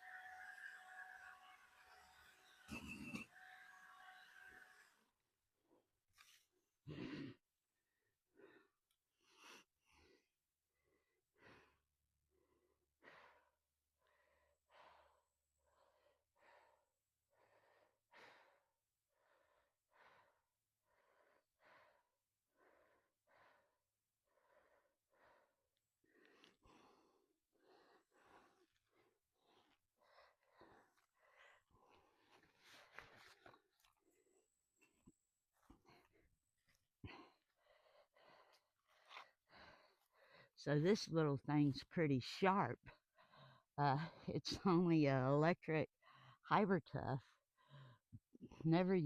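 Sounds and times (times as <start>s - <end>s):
person breathing hard: 8.3s - 40.6s, 43.0s - 44.2s.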